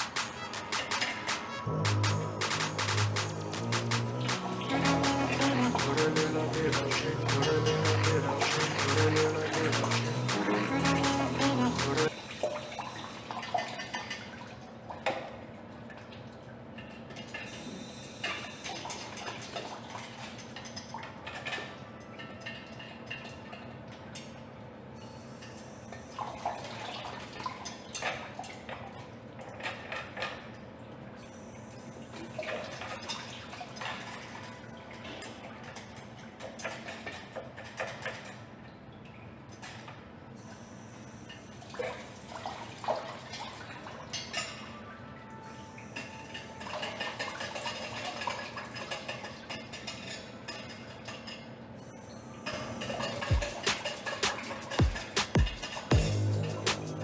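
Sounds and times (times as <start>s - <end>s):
water trickling and dripping: 0.0s - 57.0s.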